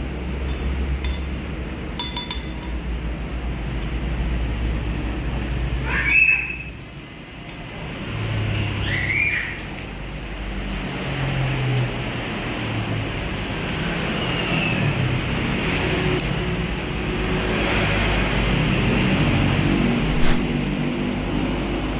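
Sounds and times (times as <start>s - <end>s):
road traffic passing: 7.4s - 21.9s.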